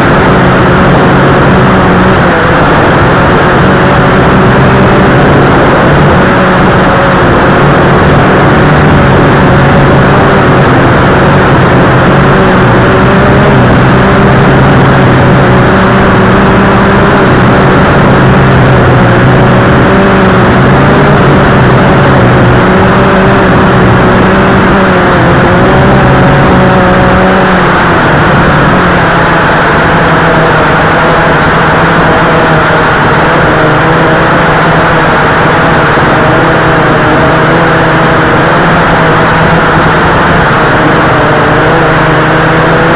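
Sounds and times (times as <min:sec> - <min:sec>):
drone propellers whirring: 0:00.0 - 0:42.9.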